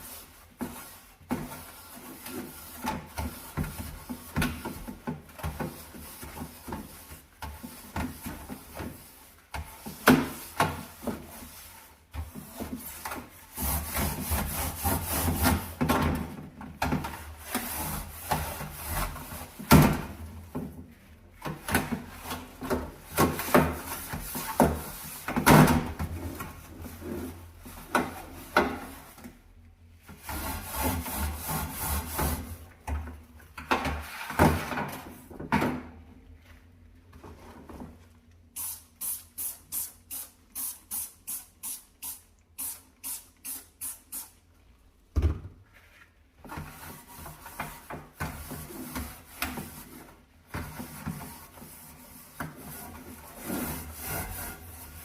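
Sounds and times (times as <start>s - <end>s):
brush scrubbing stove: 0.0s - 15.8s, 17.2s - 19.7s, 30.1s - 32.7s, 46.6s - 55.0s.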